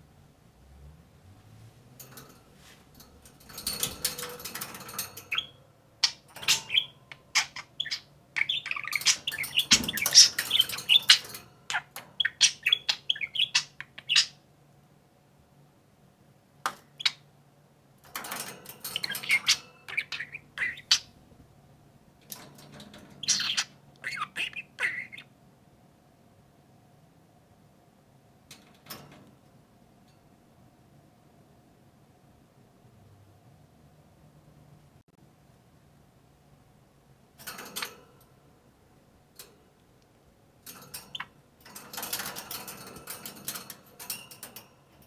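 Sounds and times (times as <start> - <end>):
budgerigars chattering and chirping: 5.0 - 14.4, 19.0 - 21.2, 23.2 - 25.3.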